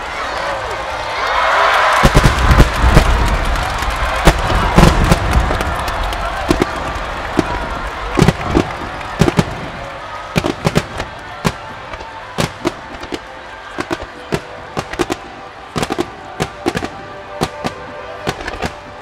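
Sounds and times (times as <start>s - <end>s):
fireworks bangs: 1.9s - 19.0s
music playing: 4.3s - 19.0s.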